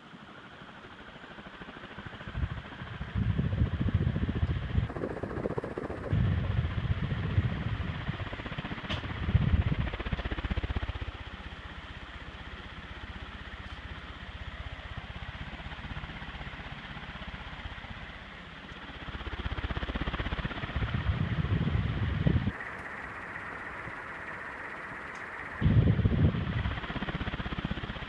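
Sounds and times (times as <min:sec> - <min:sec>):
ceiling fan running: 0:20.0 - 0:27.8.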